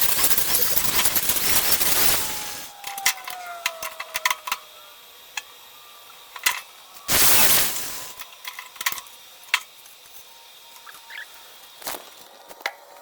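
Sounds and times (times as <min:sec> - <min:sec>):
loud hissing burst: 0:00.0 - 0:02.7, 0:07.1 - 0:08.2.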